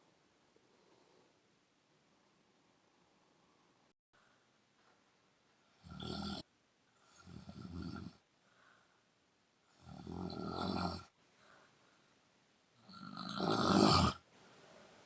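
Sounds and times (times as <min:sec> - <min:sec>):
faint breaths: 0:00.0 - 0:06.0, 0:06.9 - 0:09.9, 0:11.1 - 0:12.5, 0:14.2 - 0:15.0
woman snoring: 0:05.8 - 0:08.2, 0:09.7 - 0:11.1, 0:12.8 - 0:14.3.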